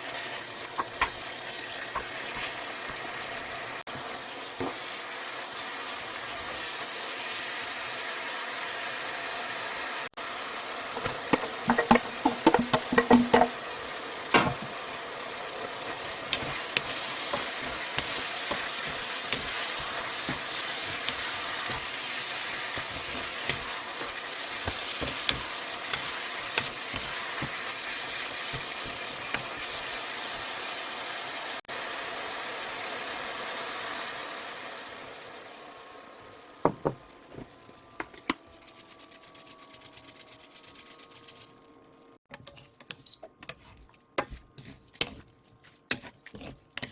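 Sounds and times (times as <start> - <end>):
food sizzling in a frying pan: 0.0 - 42.1
utensil clicking against pan: 11.0 - 13.5, 16.2 - 19.6, 22.8 - 27.6
knocks: 11.4 - 13.5.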